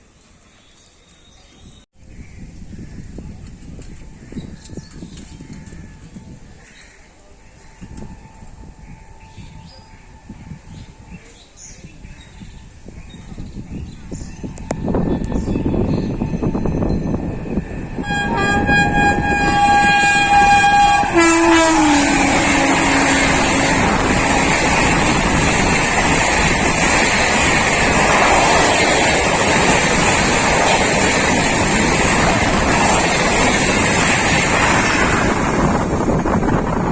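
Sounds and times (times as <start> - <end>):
train coaches rushing and rattling: 14.2 - 36.9
train horn blast: 17.9 - 36.4.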